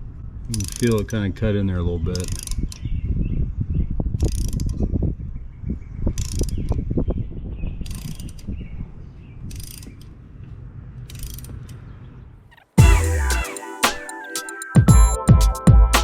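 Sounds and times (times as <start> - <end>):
ratchet pawl clicks: 0.5 - 1.0.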